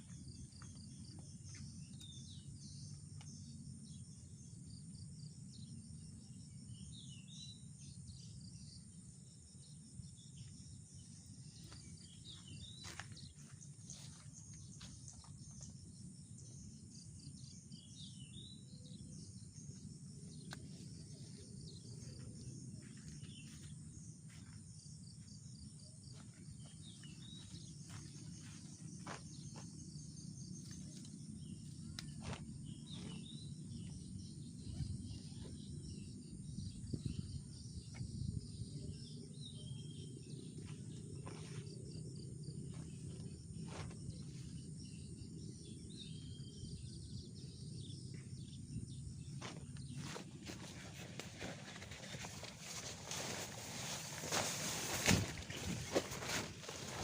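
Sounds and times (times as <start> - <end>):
birds chirping: 0.0 - 57.0
high drone of insects: 0.0 - 57.0.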